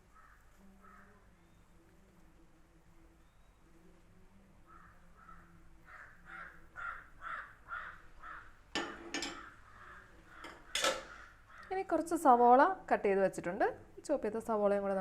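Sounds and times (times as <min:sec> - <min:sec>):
crow cawing: 0:00.1 - 0:01.1, 0:04.7 - 0:08.6, 0:09.4 - 0:11.7.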